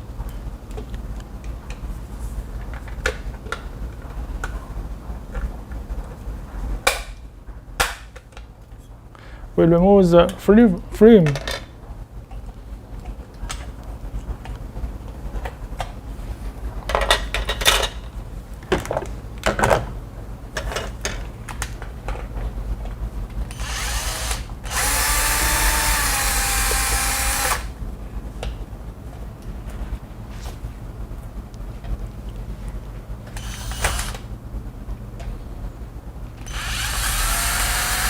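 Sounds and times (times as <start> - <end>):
power drill motor running: 23.5 - 27.8, 33.4 - 34.3, 36.4 - 38.0.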